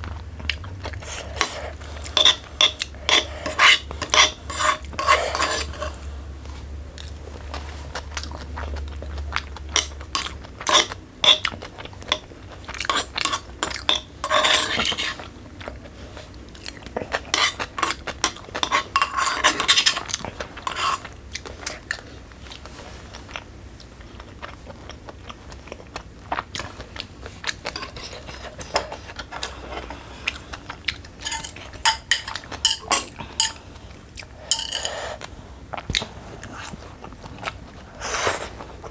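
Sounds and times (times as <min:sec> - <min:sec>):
chewing and crunching: 0:00.0 - 0:38.9
utensils clinking against a bowl: 0:01.0 - 0:06.1, 0:09.7 - 0:15.3, 0:16.5 - 0:21.2, 0:27.5 - 0:30.0, 0:31.0 - 0:33.7, 0:34.3 - 0:35.2.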